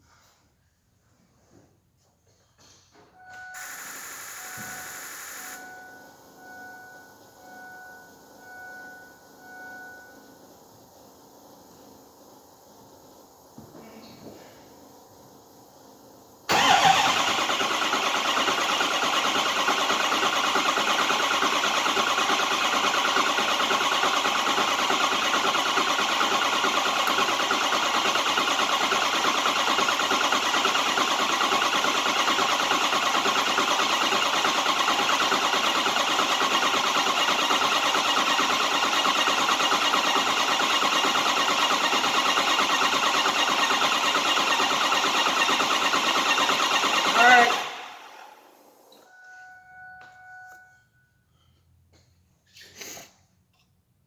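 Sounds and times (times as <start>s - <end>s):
diesel engine cranking: 16.5s - 48.3s.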